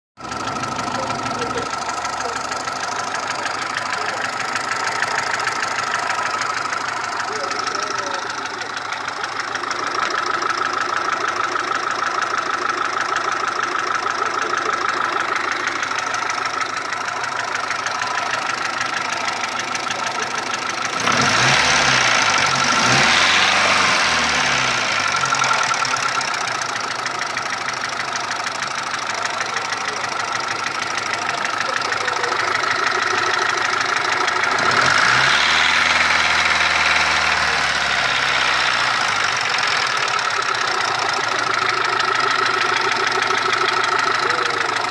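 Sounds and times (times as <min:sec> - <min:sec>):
car engine idling and revving: 0:00.2 - 0:44.9.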